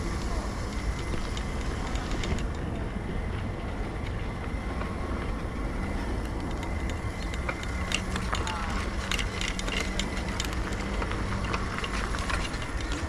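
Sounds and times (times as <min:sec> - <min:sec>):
rattling clicks: 0:00.0 - 0:02.7, 0:05.8 - 0:13.0
scooter rumbling on rough path: 0:00.0 - 0:13.0.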